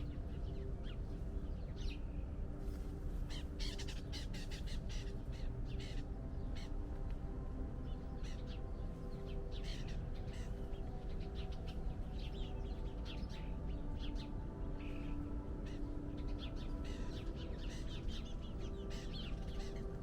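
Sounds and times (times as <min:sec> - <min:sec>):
birds calling harshly: 0:03.3 - 0:06.8, 0:08.1 - 0:20.0.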